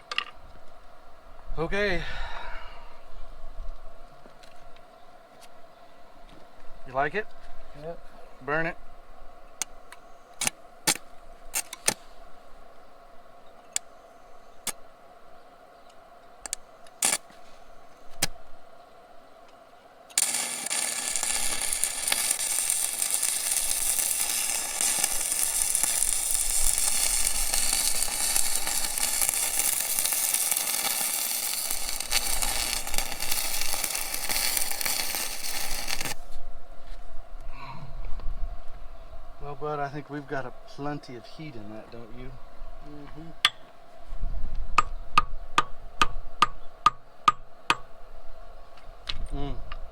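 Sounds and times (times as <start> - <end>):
electric welding arc crackling: 17.0 - 17.4, 20.1 - 36.3.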